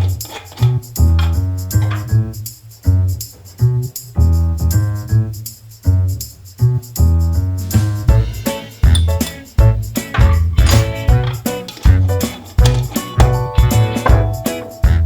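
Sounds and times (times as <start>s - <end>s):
shaker rhythm: 0.0s - 15.0s
deep bass notes: 0.9s - 15.0s
keyboard chords: 8.0s - 15.0s.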